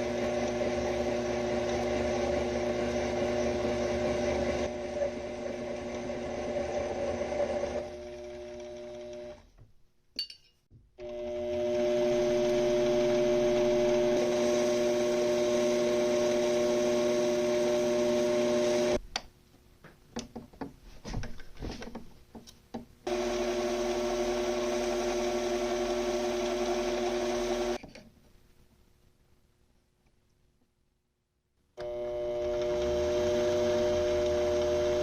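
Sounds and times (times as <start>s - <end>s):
machine tool motor whining: 11.0s - 19.0s, 31.8s - 35.0s.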